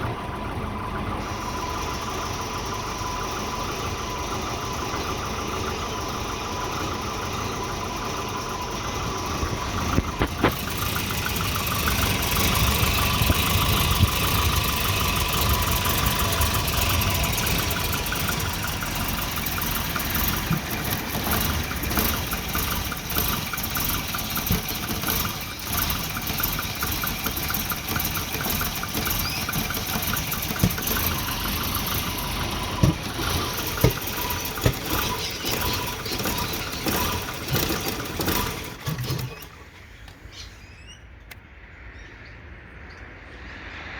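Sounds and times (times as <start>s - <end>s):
car engine idling roughly: 0.0s - 40.0s.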